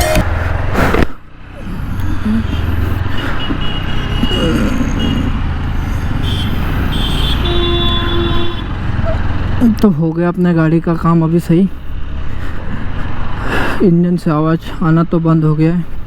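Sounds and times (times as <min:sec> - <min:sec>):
motorcycle engine running: 0:00.0 - 0:09.8.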